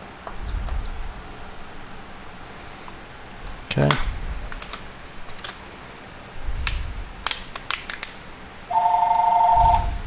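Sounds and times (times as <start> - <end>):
low bumps: 0.3 - 2.5.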